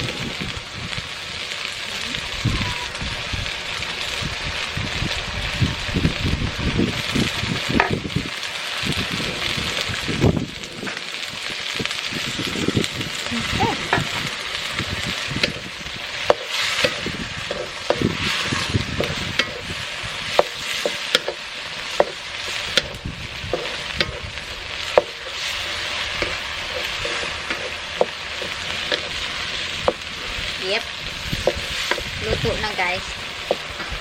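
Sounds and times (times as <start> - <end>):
beans sizzling in a pan: 0.0 - 34.0
utensil scraping a pan: 13.8 - 34.0.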